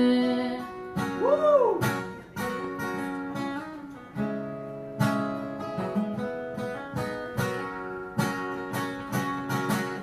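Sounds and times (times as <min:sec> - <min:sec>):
acoustic guitar strumming chords: 0:00.0 - 0:10.0.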